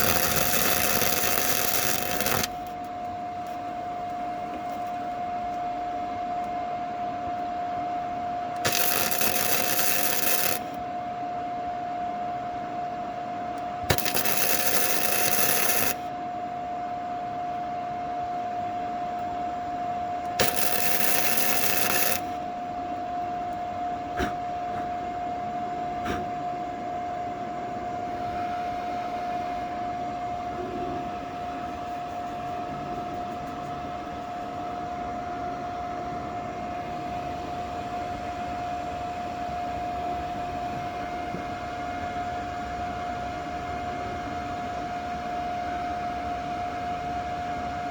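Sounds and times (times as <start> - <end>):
welding arc crackling: 0.0 - 2.8, 8.6 - 10.8, 13.9 - 16.1, 20.3 - 22.5
steady hum: 0.0 - 47.9.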